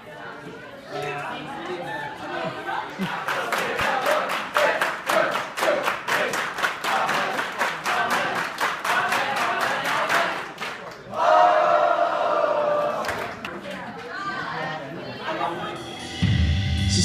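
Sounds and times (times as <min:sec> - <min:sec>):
people clapping: 0:02.9 - 0:11.4, 0:12.7 - 0:14.5.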